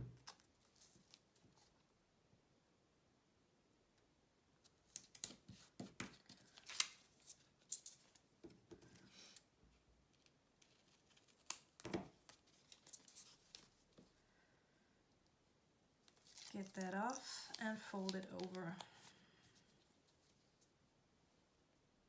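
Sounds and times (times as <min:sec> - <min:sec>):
ribbon and tape rustling: 0:04.6 - 0:09.4, 0:10.1 - 0:14.2, 0:16.1 - 0:20.7.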